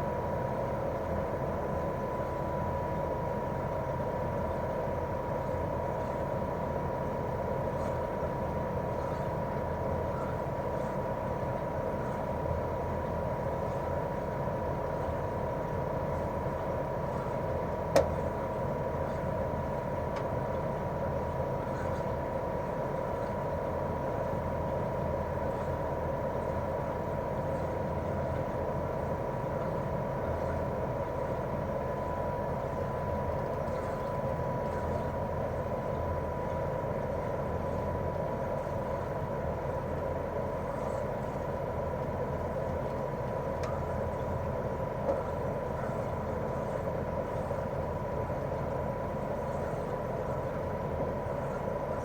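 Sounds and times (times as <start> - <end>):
air conditioner unit humming: 0.0 - 52.0.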